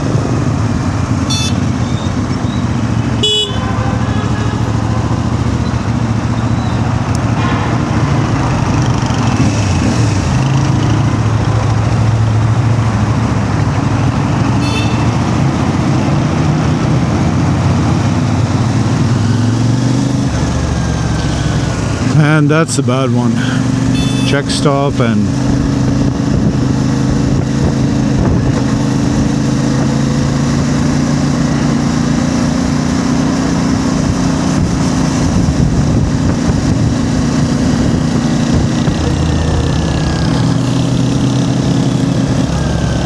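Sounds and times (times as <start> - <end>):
motorcycle engine running: 0.0 - 43.0
short horn toots: 1.3 - 1.9, 3.1 - 5.2, 14.6 - 15.3, 23.9 - 24.6.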